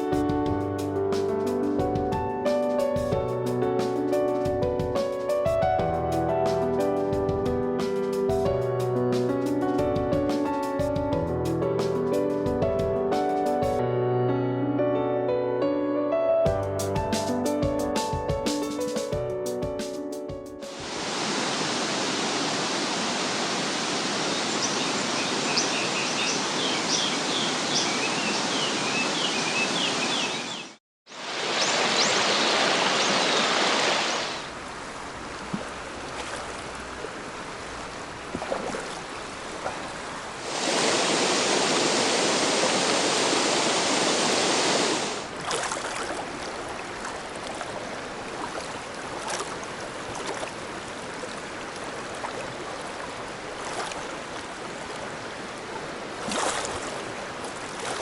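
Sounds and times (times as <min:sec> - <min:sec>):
river water rushing: 0:20.7 - 0:58.0
songbird chirping: 0:24.0 - 0:30.8, 0:31.5 - 0:34.4.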